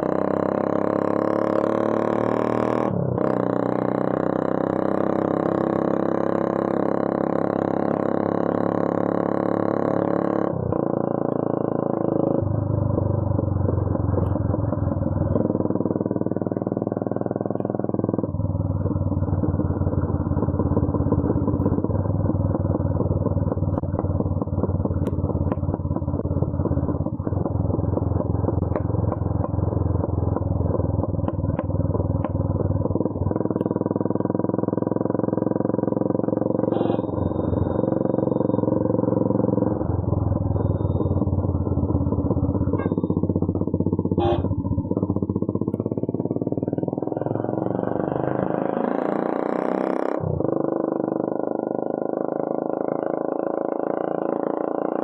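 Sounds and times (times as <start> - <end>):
loud motorcycle engine: 0.0 - 55.0.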